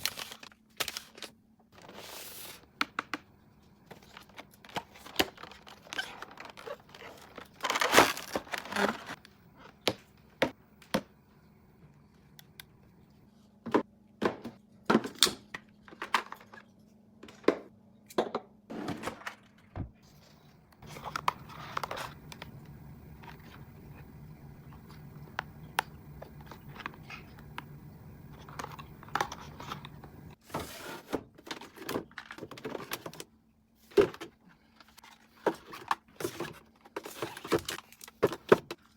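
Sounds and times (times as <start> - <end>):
plastic packaging crinkling: 0.0 - 2.4, 3.9 - 9.2
low steady hum: 15.5 - 30.4.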